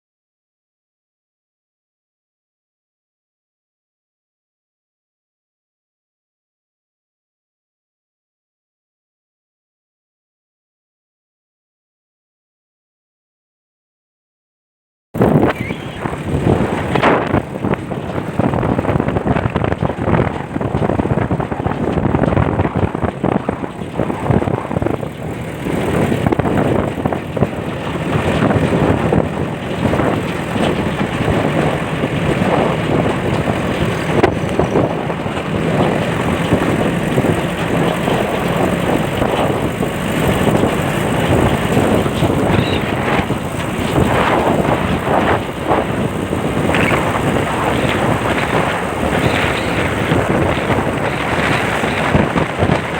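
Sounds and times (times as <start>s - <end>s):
car engine running: 15.2s - 52.9s
wind buffeting microphone: 15.2s - 52.9s.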